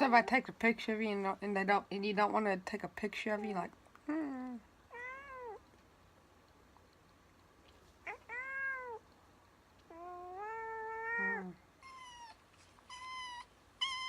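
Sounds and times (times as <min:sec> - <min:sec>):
cat meowing: 0:04.9 - 0:05.6, 0:08.0 - 0:09.0, 0:09.9 - 0:14.0.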